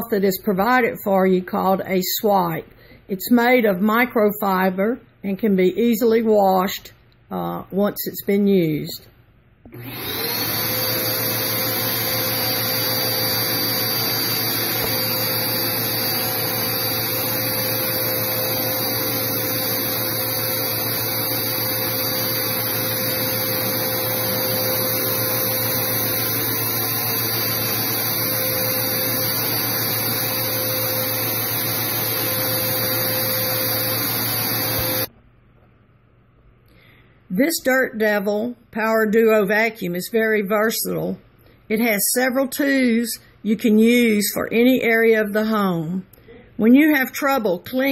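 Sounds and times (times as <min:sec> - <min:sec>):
vacuum cleaner motor whine: 0:09.7 - 0:35.1.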